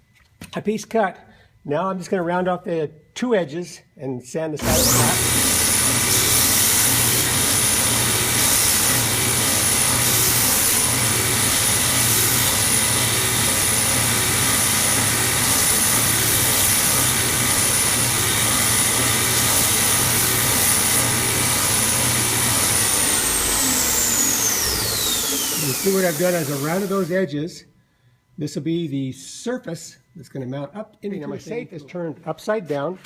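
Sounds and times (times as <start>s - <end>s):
power tool whining: 4.6s - 27.2s.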